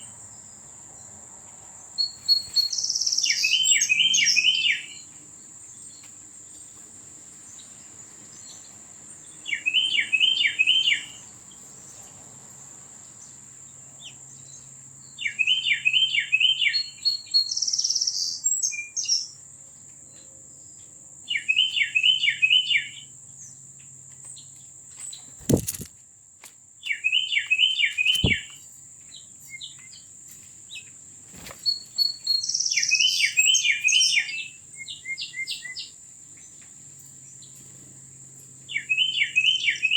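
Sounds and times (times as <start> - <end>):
songbird singing: 1.9 - 5.1, 14.0 - 19.4, 26.8 - 30.1, 31.6 - 36.6
sharp clicks: 25.4 - 25.9.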